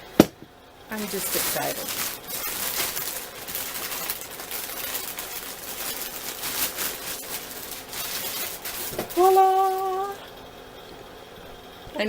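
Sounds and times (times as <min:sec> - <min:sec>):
packaging crackling rustle: 0:00.9 - 0:10.2.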